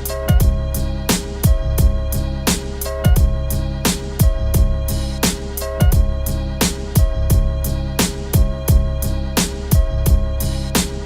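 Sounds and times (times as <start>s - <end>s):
kick drums: 0.3s - 0.7s, 1.4s - 2.1s, 3.1s - 3.5s, 4.2s - 4.9s, 5.8s - 7.6s, 8.4s - 9.0s, 9.7s - 10.4s
snare hits: 10.8s - 11.0s.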